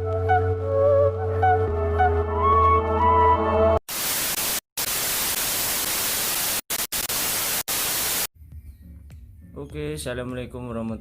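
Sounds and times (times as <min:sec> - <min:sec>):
loud static hiss: 0:03.9 - 0:08.3.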